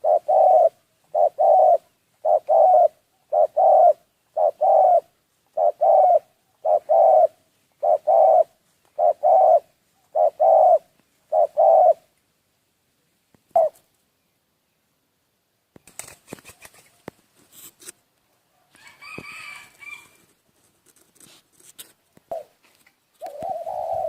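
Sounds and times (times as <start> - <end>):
dove cooing: 0.0 - 12.1, 13.5 - 13.9, 22.3 - 22.6, 23.2 - 24.0.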